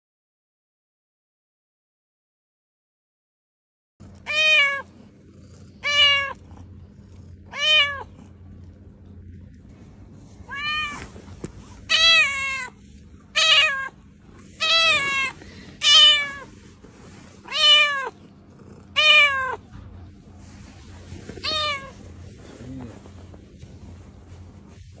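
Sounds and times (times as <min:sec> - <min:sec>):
cat meowing: 0:04.3 - 0:05.0, 0:05.8 - 0:06.5, 0:07.5 - 0:08.2, 0:10.4 - 0:16.6, 0:17.4 - 0:19.7, 0:21.4 - 0:22.1.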